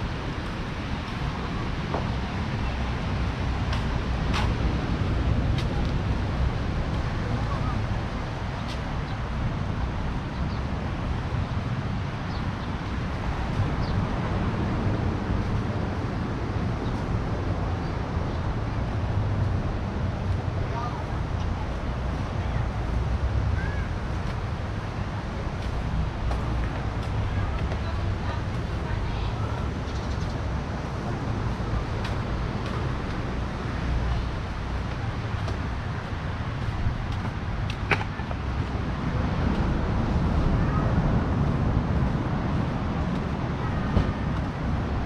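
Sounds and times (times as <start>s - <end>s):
surf rumbling: 0.0s - 45.0s
wind buffeting microphone: 0.0s - 45.0s
surf washing: 30.5s - 45.0s.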